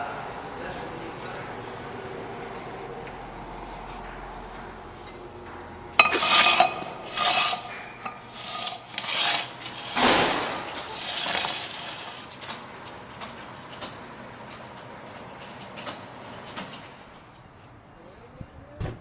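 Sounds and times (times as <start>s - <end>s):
hard objects scraping and clinking: 6.0s - 12.5s.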